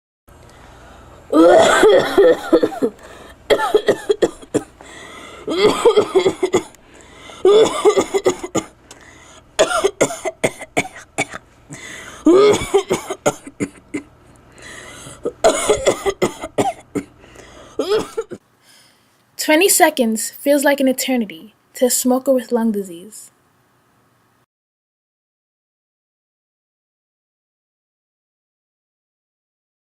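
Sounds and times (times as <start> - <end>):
person coughing harshly: 1.4 - 4.7, 5.4 - 6.8, 7.4 - 8.8, 9.6 - 14.1, 15.1 - 17.2, 17.8 - 18.4.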